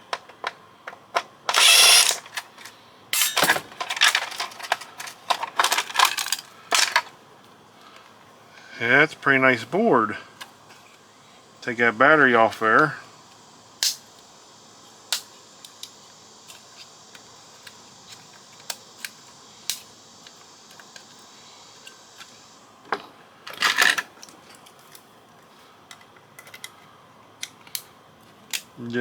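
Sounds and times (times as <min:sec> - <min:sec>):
hand tools clicking on circuit board: 0:01.2 - 0:02.4.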